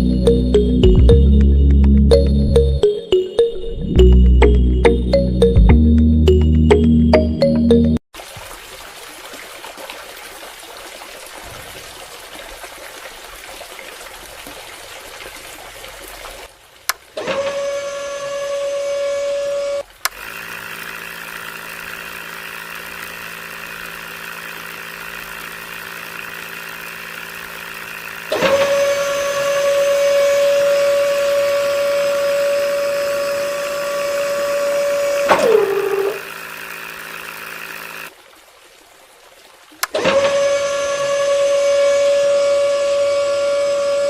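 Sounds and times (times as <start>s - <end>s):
small motor low hum: 17.2s - 38.2s, 39.8s - 44.0s
small motor whine: 17.2s - 38.2s, 39.8s - 44.0s.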